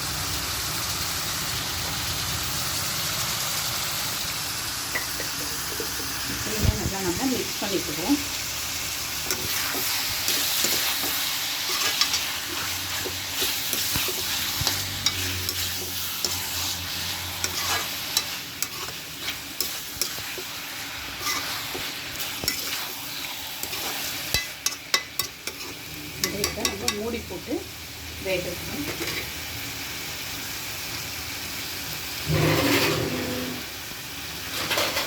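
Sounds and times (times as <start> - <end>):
liver sizzling in oil: 0.0 - 35.0
spoon scraping against pan: 4.9 - 6.2, 9.1 - 27.1, 32.2 - 33.6.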